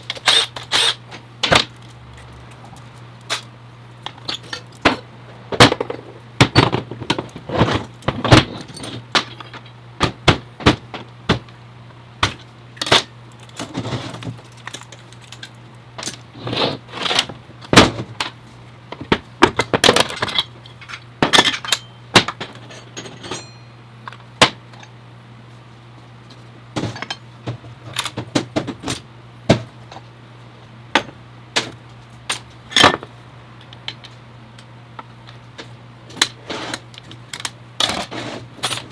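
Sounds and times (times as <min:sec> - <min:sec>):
steady low hum: 0:00.0 - 0:38.9
metal tools clinking and knocking: 0:20.0 - 0:24.2.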